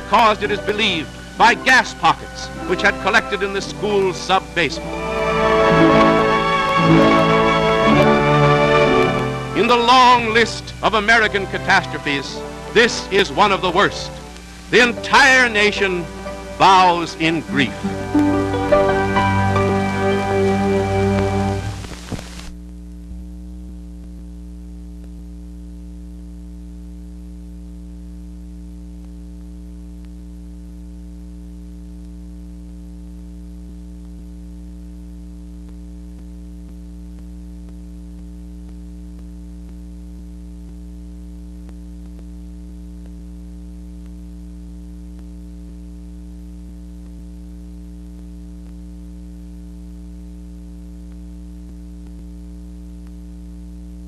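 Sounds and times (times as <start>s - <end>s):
faint hiss: 0.0s - 24.2s
electrical hum: 0.0s - 54.0s
light film crackles: 21.7s - 22.6s.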